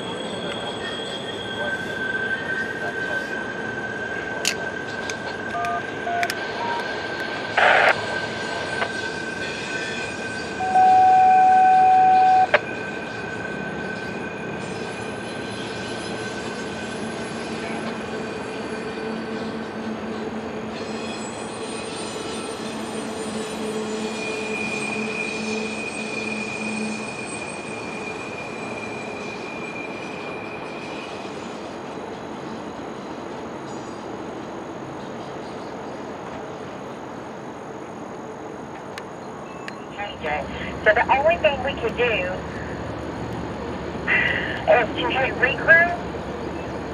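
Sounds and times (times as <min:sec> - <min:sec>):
loud steady tone: 0:00.0 - 0:13.4, 0:39.9 - 0:42.7, 0:44.1 - 0:46.0
train rolling over rails: 0:00.0 - 0:46.9.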